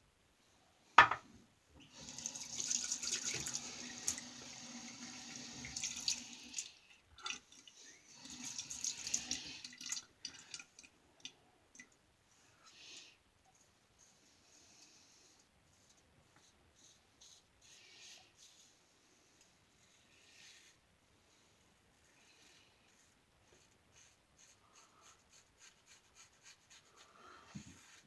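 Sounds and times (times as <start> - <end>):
tap water running into sink: 2.0 - 7.5, 8.2 - 10.6.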